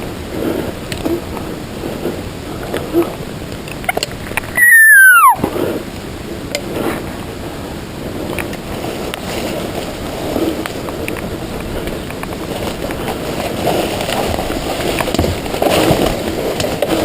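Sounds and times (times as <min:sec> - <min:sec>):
elk bugle whistle: 0:04.6 - 0:05.4
steady rustle: 0:08.1 - 0:17.0.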